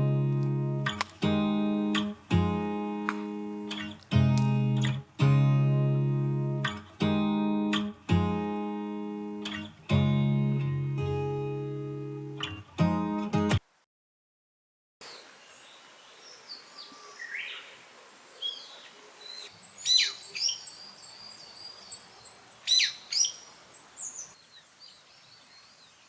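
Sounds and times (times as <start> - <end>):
slow strummed guitar chords: 0.0 - 13.6.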